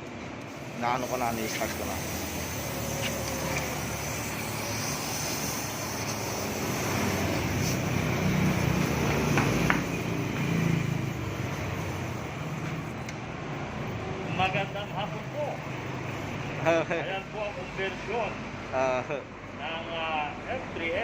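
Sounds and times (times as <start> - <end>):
scooter engine idling and revving: 2.0 - 14.0.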